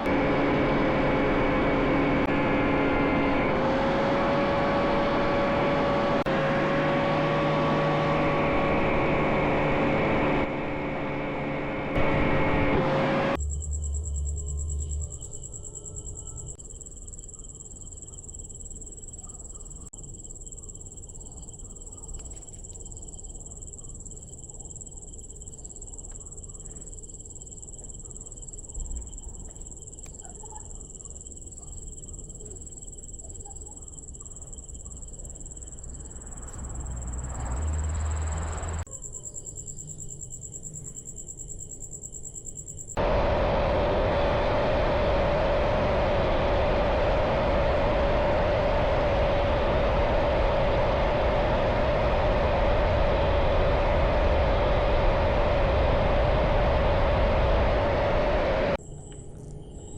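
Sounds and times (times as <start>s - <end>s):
loud steady rushing noise: 0.0s - 13.4s, 36.4s - 38.9s, 43.0s - 58.8s
low rumble: 8.2s - 16.6s, 35.6s - 38.9s, 43.0s - 58.8s
insect chirring: 13.4s - 43.0s.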